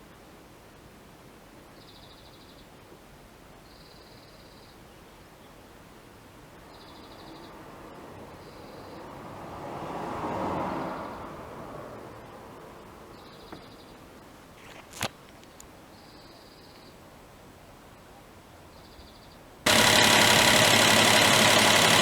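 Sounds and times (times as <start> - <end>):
passing vehicle: 7.4 - 13.2.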